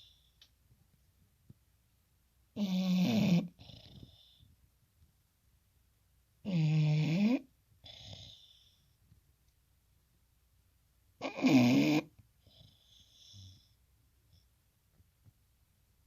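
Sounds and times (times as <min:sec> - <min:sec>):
dog snoring: 0:02.6 - 0:04.5, 0:06.4 - 0:08.7, 0:11.2 - 0:13.7.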